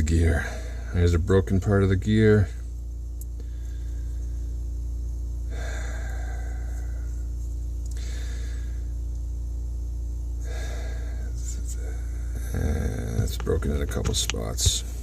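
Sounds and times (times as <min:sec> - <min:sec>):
steady low hum: 0:00.0 - 0:15.0
man breathing heavily: 0:00.3 - 0:01.0, 0:03.4 - 0:04.6, 0:05.4 - 0:09.1, 0:10.4 - 0:13.3.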